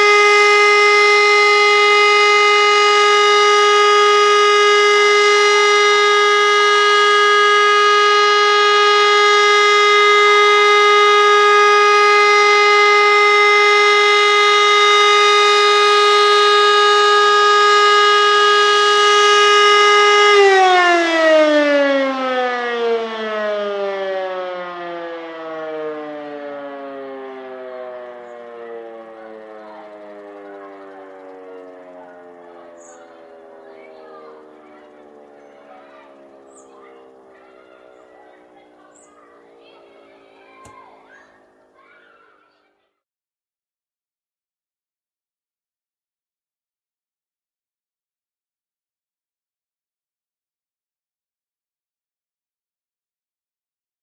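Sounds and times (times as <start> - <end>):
civil defence siren: 0.0 - 42.7.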